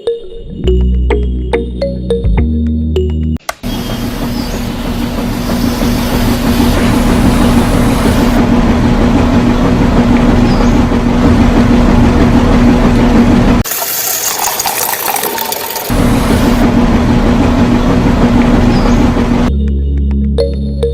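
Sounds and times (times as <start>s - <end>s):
rattly mechanical noise: 3.5s - 19.5s.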